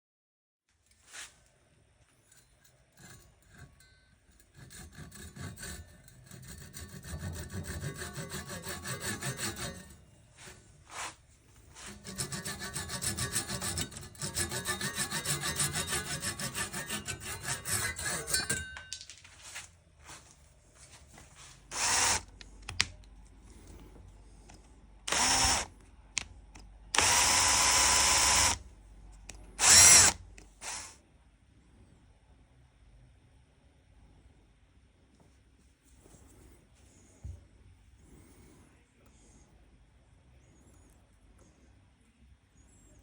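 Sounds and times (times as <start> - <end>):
hand tool rasping wood: 4.5 - 11.2, 11.8 - 18.8, 21.7 - 22.2, 25.1 - 25.6, 27.0 - 28.6, 29.6 - 30.9.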